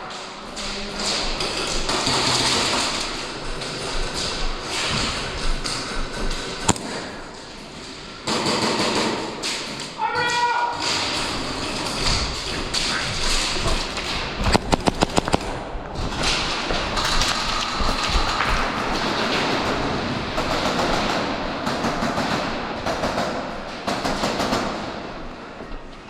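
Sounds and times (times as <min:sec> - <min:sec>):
airsoft gun firing: 0:05.5 - 0:07.3, 0:13.4 - 0:19.4.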